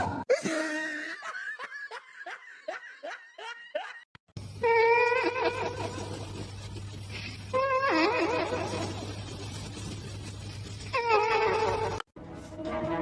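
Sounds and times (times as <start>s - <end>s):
person laughing: 0.3s - 4.1s.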